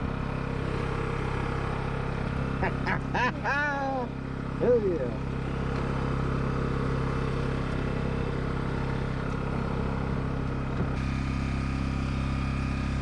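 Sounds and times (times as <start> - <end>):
boat engine droning: 0.0 - 13.0.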